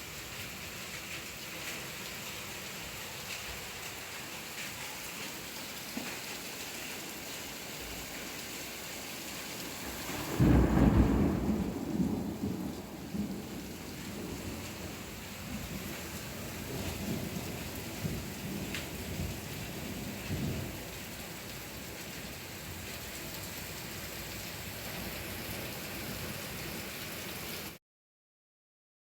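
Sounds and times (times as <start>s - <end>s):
heavy rain and hail: 0.0s - 27.8s
thunder rumbling: 9.7s - 21.0s.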